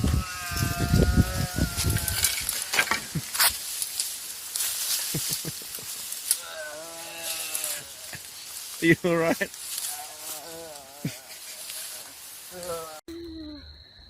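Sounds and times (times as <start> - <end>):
person wheezing and gasping: 9.9 - 13.6.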